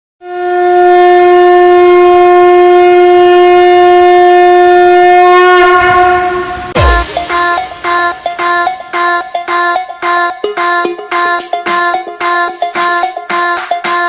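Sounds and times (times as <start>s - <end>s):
conch shell blown: 0.2s - 11.2s
deep boom: 6.8s - 8.2s.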